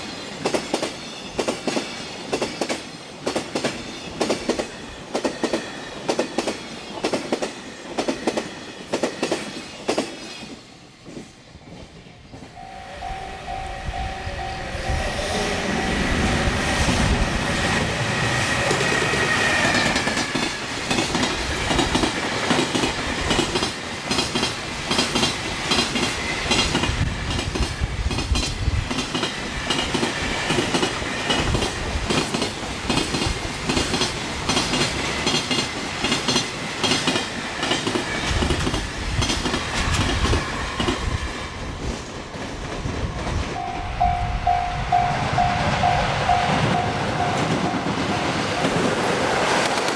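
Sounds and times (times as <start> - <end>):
level crossing warning bell: 12.4 - 21.0, 43.5 - 49.9
wheels clacking over rail joints: 42.0 - 49.9.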